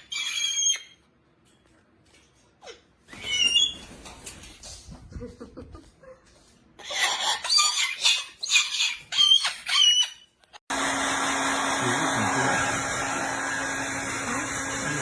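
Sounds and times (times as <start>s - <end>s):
cockatoo squawks and screeches: 0.0s - 1.0s, 2.6s - 4.0s, 6.8s - 10.4s.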